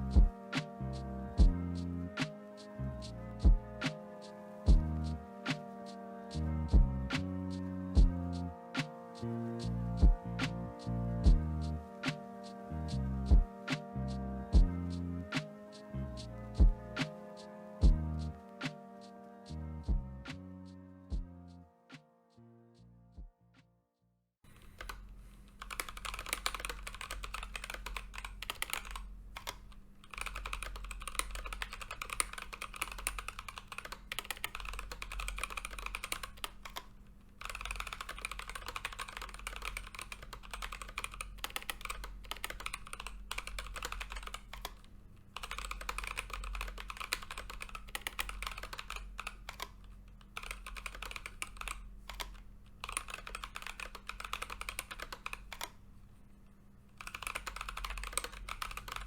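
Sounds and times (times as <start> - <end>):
faint low hum: 0.0 - 3.9, 4.6 - 5.3, 6.3 - 17.1
mechanical keyboard typing: 24.6 - 25.0, 25.6 - 55.8, 57.0 - 59.0.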